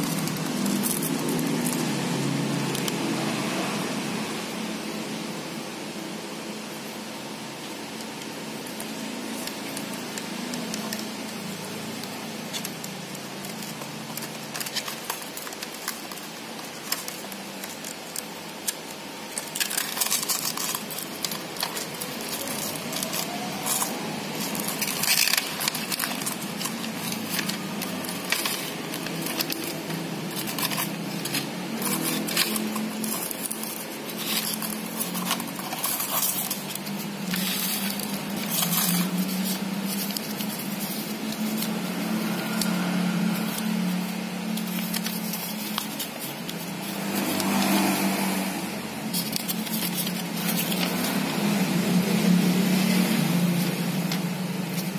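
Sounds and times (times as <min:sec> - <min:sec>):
plastic packaging crackling: 0:00.0 - 0:03.6, 0:07.9 - 0:54.9
steady background hiss: 0:00.0 - 0:54.9.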